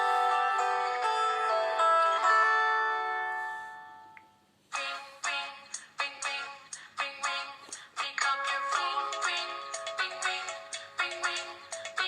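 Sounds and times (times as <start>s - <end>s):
phone ringtone melody: 0.0s - 4.2s, 8.4s - 12.0s.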